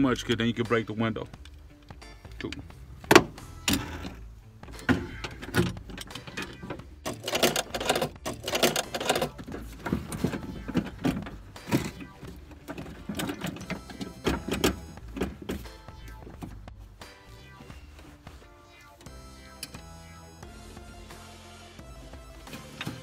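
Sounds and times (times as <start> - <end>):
metallic tool clicks and rattles: 7.1 - 9.4.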